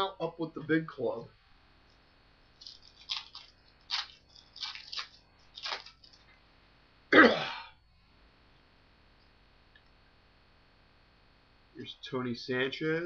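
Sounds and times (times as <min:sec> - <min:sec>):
cards rustling: 0:02.5 - 0:06.3
person coughing: 0:07.1 - 0:07.8.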